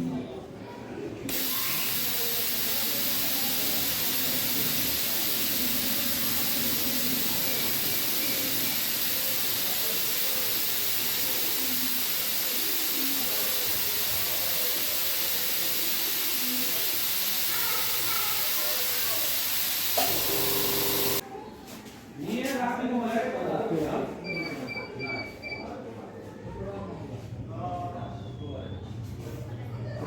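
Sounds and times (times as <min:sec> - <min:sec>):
faint voices: 0:00.0 - 0:21.7
loud steady hiss: 0:01.3 - 0:21.2.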